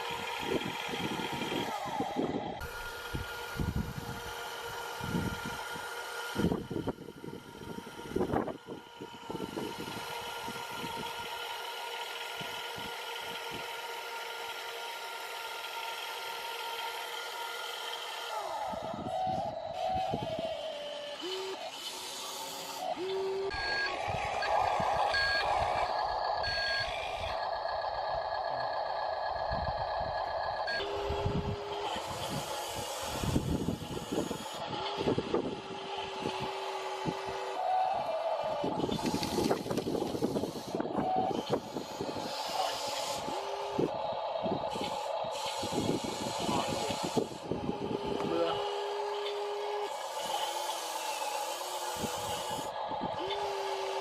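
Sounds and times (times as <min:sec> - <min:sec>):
steady mechanical hum: 0:00.0 - 0:54.0
reversing alarm beeping: 0:18.7 - 0:21.7, 0:22.6 - 0:34.6.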